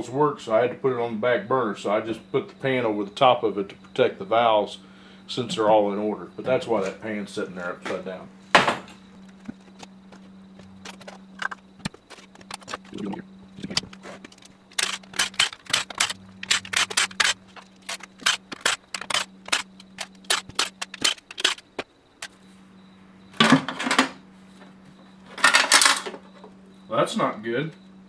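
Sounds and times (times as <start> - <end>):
metallic clatter: 8.6 - 22.4
hand ratchet clicking: 10.9 - 22.3.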